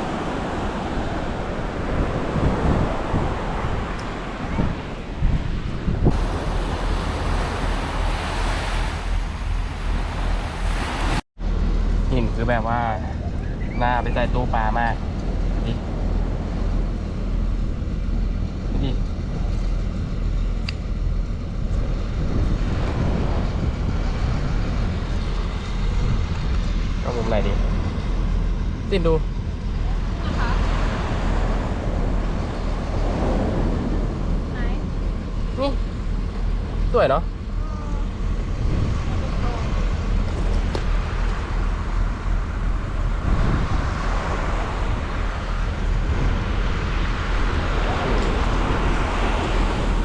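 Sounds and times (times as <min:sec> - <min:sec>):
surf breaking on beach: 0:00.0 - 0:11.2, 0:30.0 - 0:35.8, 0:36.5 - 0:50.0
wind buffeting microphone: 0:00.0 - 0:50.0.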